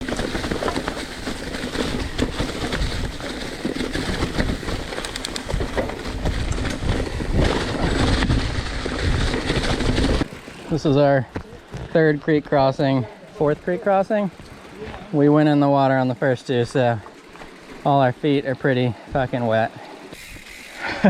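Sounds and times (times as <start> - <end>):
bike tyres and frame rattling: 0.0 - 21.0
wind buffeting microphone: 1.8 - 10.3.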